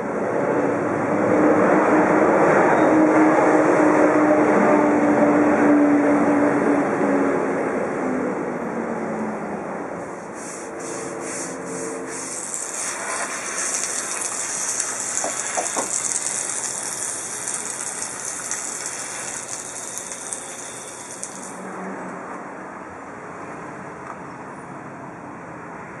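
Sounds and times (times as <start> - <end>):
vacuum cleaner running: 10.8 - 21.7
bright hiss: 11.7 - 21.6.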